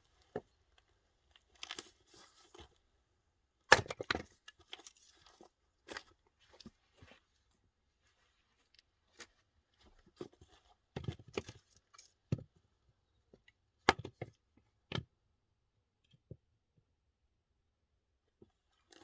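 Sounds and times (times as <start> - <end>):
clicks and crunches: 0.2 - 2.8.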